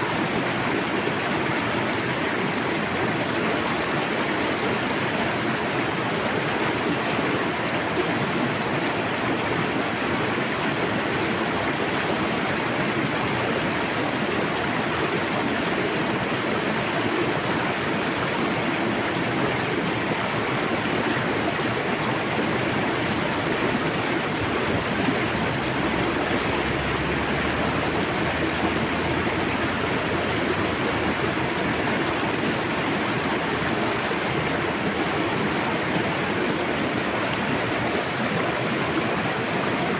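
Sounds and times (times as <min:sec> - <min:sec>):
river rushing: 0:02.9 - 0:05.9
bird chirp: 0:03.3 - 0:05.8.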